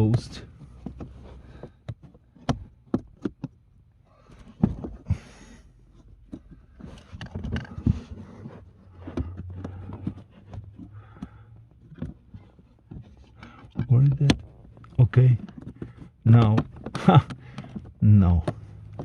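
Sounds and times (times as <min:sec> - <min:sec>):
hard plastic clicks and knocks: 0:00.0 - 0:03.7, 0:08.9 - 0:19.0
plastic scraping: 0:00.0 - 0:19.0.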